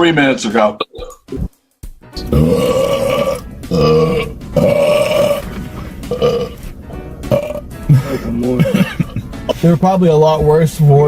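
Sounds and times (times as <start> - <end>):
man burping: 0.8 - 1.5, 2.2 - 6.6, 7.3 - 9.6.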